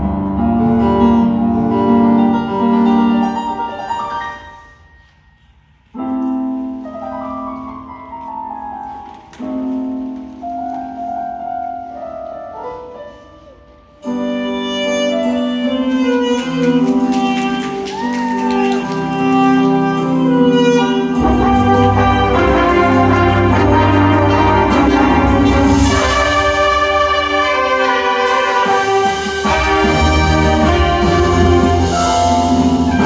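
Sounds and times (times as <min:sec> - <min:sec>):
wind band playing: 0:14.0 - 0:33.0.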